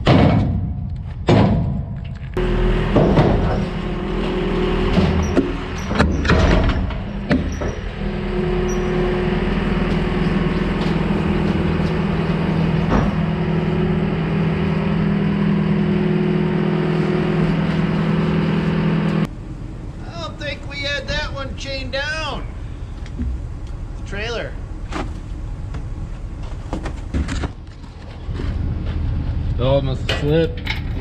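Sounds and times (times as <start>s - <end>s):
metal clanks and thuds: 0.0s - 13.6s, 25.8s - 28.5s
skid steer engine running: 2.3s - 24.0s.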